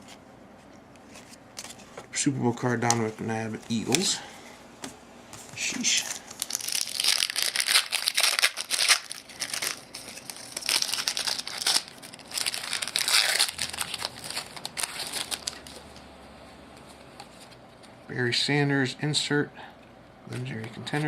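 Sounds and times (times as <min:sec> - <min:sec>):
wrappers tearing and crinkling: 0:06.0 - 0:16.0.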